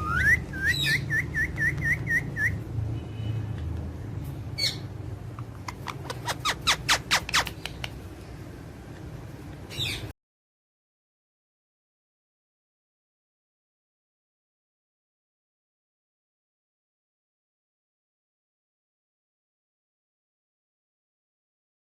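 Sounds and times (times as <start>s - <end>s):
parrot whistling: 0.0s - 2.6s
low background hum: 0.0s - 10.1s
parrot squawk: 5.4s - 7.6s.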